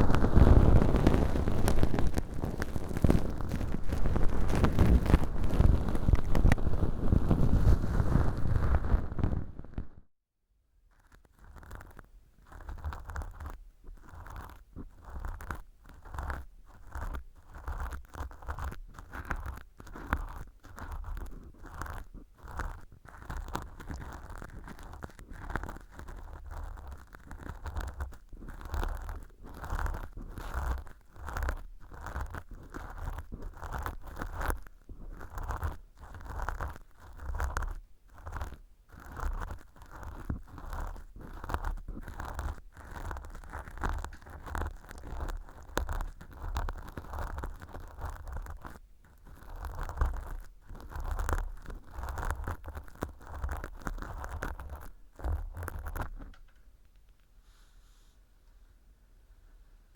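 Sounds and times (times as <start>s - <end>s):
earpick scraping velcro: 0.0s - 9.5s, 11.0s - 56.5s.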